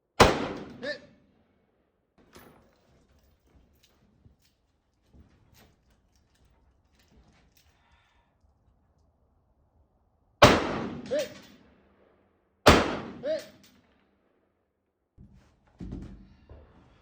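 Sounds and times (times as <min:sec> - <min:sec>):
rifle shots with echo: 0:00.2 - 0:01.0, 0:10.4 - 0:11.6, 0:12.6 - 0:14.0.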